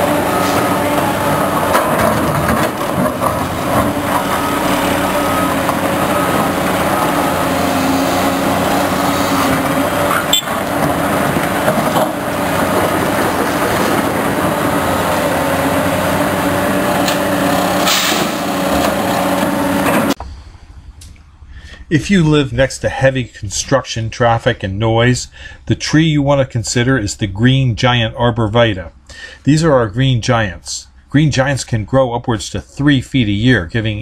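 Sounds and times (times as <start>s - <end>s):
diesel construction machinery running: 0.0s - 20.4s.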